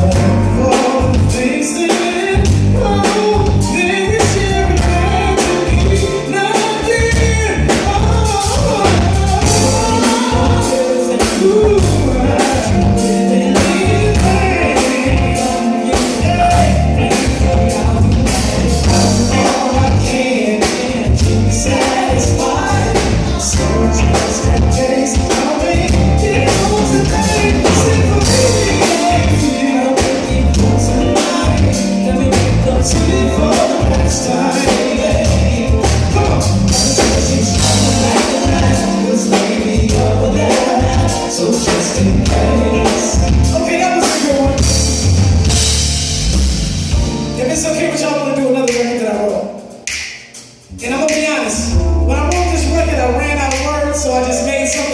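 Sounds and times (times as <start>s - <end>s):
heavy bass beat: 0.0s - 1.5s, 2.3s - 6.2s, 6.8s - 10.8s, 11.5s - 15.5s, 16.2s - 20.2s, 21.0s - 39.0s, 39.8s - 43.6s, 44.2s - 47.4s
live band with singing: 0.0s - 54.9s.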